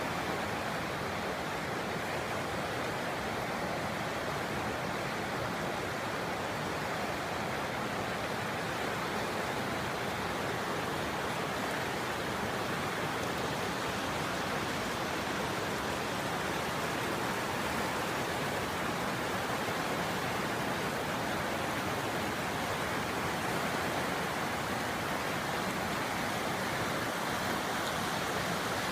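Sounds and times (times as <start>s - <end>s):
river water rushing: 0.0s - 28.9s.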